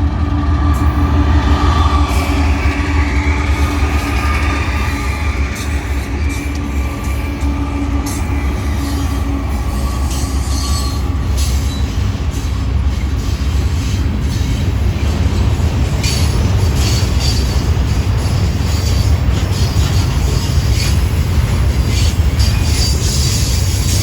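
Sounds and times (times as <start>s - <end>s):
freight train rumbling: 0.0s - 24.0s
wheel squeals: 16.0s - 24.0s.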